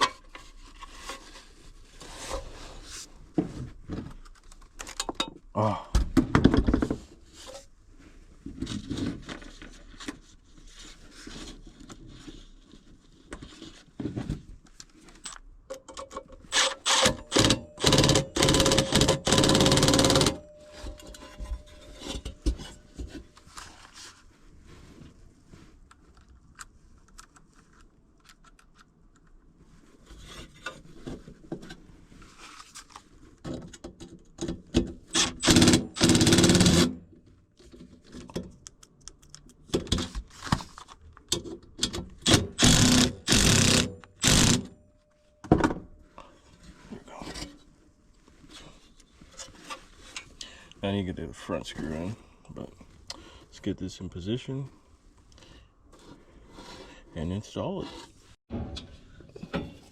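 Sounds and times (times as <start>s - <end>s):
cordless drill driving screws: 16.5s - 20.4s, 35.2s - 36.9s, 42.2s - 44.7s.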